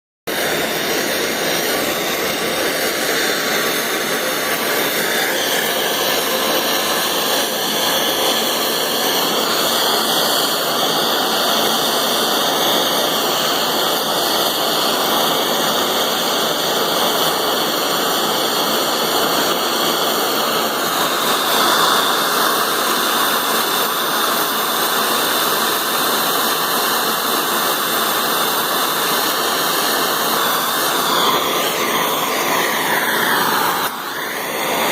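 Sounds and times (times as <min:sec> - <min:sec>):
gas torch flame hissing: 0:00.3 - 0:34.9.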